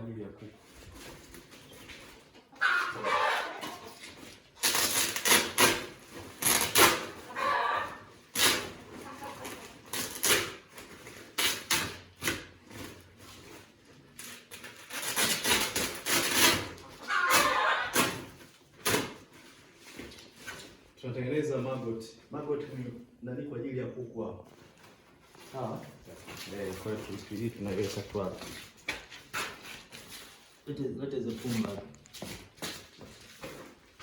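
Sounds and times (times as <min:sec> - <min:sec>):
chickens clucking: 0:01.6 - 0:04.4, 0:07.0 - 0:09.8, 0:16.7 - 0:18.2
rustles: 0:24.5 - 0:34.0.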